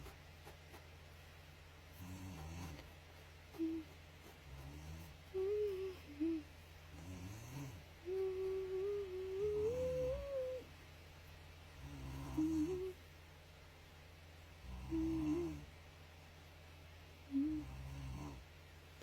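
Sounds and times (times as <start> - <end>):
person snoring: 2.0 - 2.8, 4.4 - 10.6, 11.8 - 13.0, 14.6 - 15.7.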